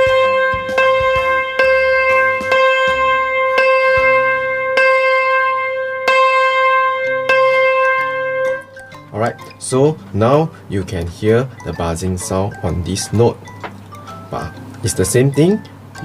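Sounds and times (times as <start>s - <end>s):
yangqin note struck with buzz: 0.0s - 10.0s.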